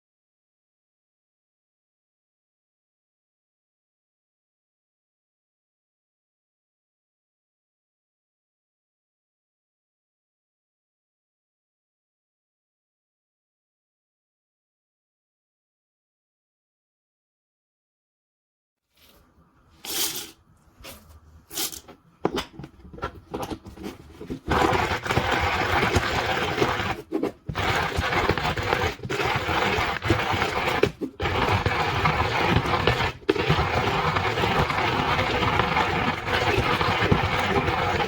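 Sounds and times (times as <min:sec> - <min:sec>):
hand coffee grinder crunching: 0:19.9 - 0:38.0.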